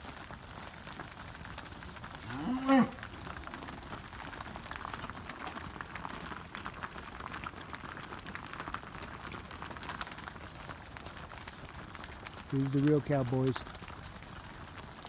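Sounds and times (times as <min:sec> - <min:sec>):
faint clicks and rustle: 0:00.0 - 0:15.0
cow mooing: 0:02.2 - 0:03.2.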